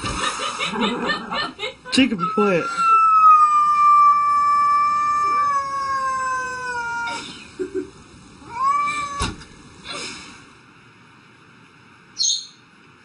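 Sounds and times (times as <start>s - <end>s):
cat yowling: 2.0s - 7.5s, 8.4s - 9.4s.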